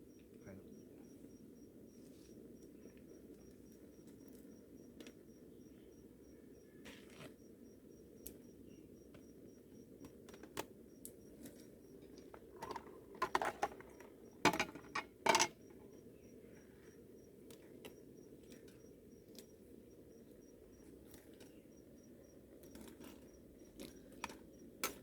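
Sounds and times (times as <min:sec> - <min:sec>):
cricket chirping: 0:00.0 - 0:25.0
sharp clinks and knocks: 0:14.5 - 0:15.6.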